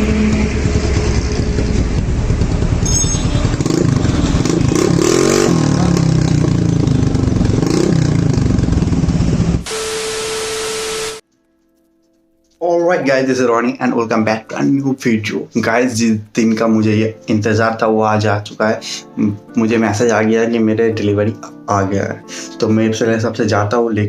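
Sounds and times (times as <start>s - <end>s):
motorbike engine revving: 0.0s - 11.2s.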